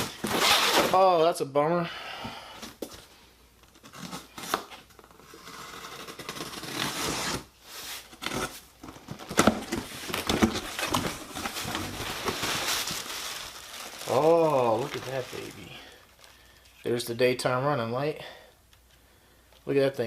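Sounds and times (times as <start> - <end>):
packaging crinkling and tearing: 8.3 - 16.5.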